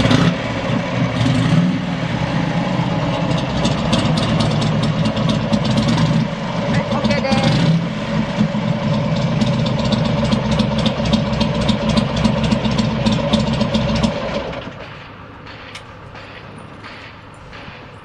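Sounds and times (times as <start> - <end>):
motorcycle engine idling: 2.9 - 15.0
scattered clicks: 14.5 - 18.0.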